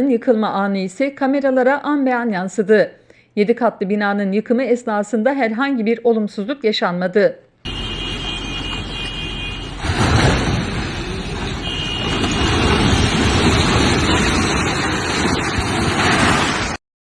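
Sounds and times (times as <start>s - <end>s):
rumble of falling masonry: 8.7s - 16.8s
horn: 11.6s - 12.2s.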